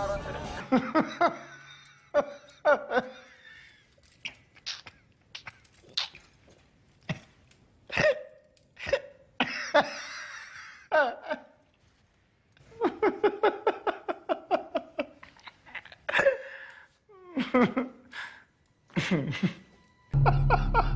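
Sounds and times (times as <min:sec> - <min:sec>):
person coughing: 0:07.1 - 0:09.9.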